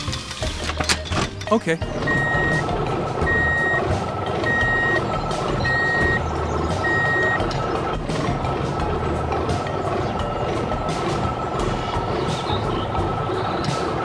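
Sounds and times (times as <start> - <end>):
heavy vehicle engine rumble: 0.0 - 14.0
reversing alarm beeping: 1.9 - 7.6.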